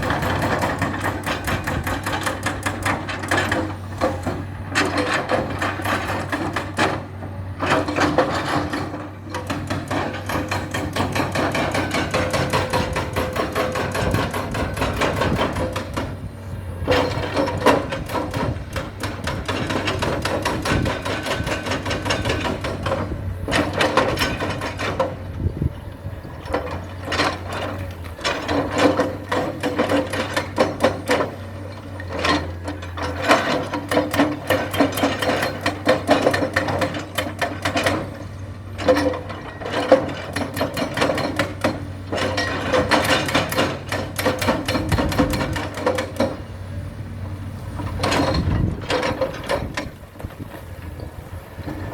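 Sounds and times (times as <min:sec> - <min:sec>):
excavator engine hum: 0:00.0 - 0:51.9
metallic clanking and knocking: 0:26.4 - 0:46.4, 0:47.9 - 0:51.9.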